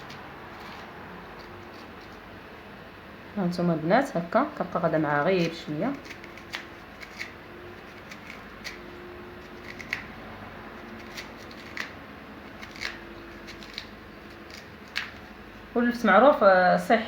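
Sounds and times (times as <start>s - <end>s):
knife scraping turnip: 0.0s - 2.3s, 5.2s - 15.4s.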